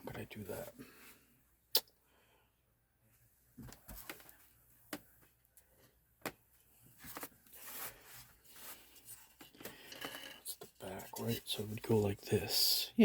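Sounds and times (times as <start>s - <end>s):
soft rustling: 3.1s - 9.7s.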